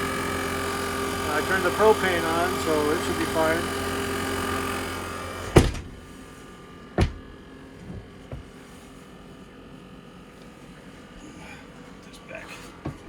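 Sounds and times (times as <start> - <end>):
loud knock: 5.6 - 6.1, 7.0 - 7.4
faint taps: 7.0 - 8.6.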